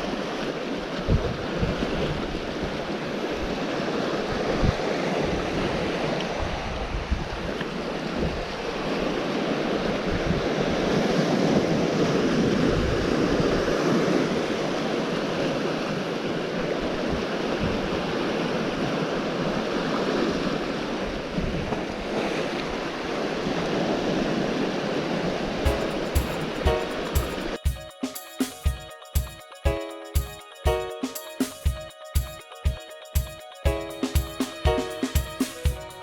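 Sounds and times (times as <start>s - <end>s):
surf washing on shore: 0.0s - 27.6s.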